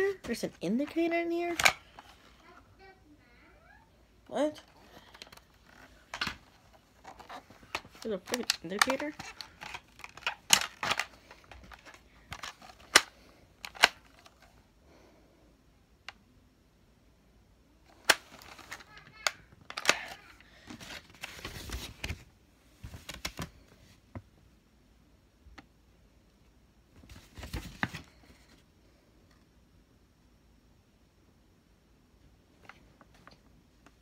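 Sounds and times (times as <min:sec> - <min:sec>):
rustling handling noise: 0:00.0 - 0:02.8, 0:04.2 - 0:14.7, 0:17.9 - 0:24.3, 0:26.9 - 0:28.7
plastic parts clicking: 0:05.0 - 0:14.5, 0:18.0 - 0:20.2.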